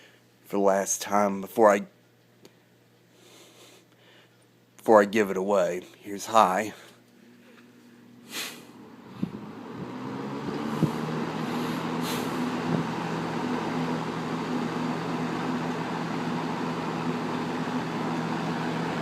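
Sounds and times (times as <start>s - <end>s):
fan motor hum: 4.8s - 19.0s
box fan air rush: 8.0s - 19.0s.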